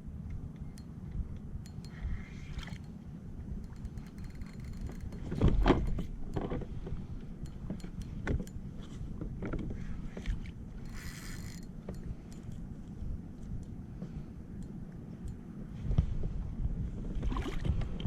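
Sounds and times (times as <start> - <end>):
low rumble of water and wind: 0.0 - 18.0
short buzzing rattle: 3.6 - 6.1, 10.8 - 12.6
gear knocking and clattering on kayak: 3.6 - 12.5.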